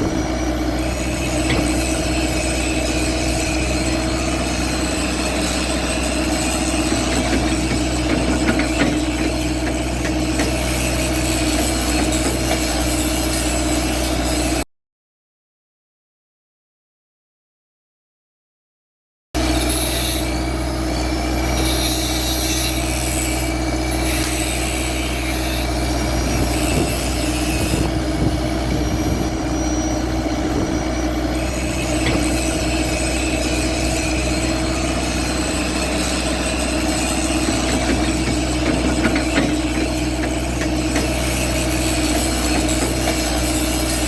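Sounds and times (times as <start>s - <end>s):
excavator diesel engine running: 0.0s - 14.6s, 19.4s - 44.0s.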